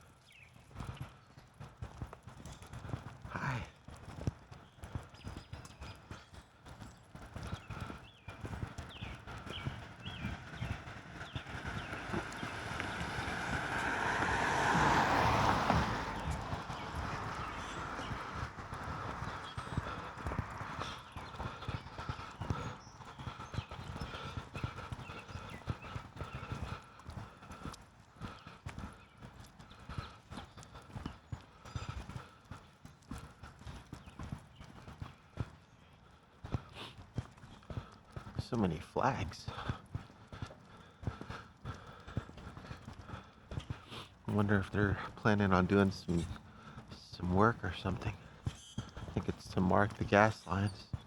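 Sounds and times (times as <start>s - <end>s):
small bird chirping: 7.5s - 13.2s.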